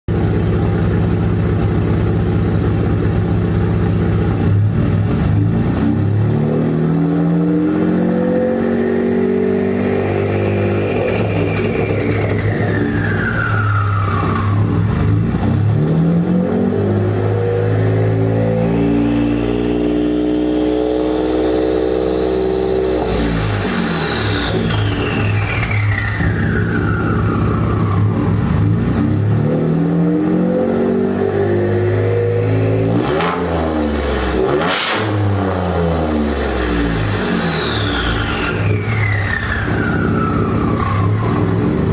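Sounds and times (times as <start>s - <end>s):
turbo whistle: 37.2s - 41.4s.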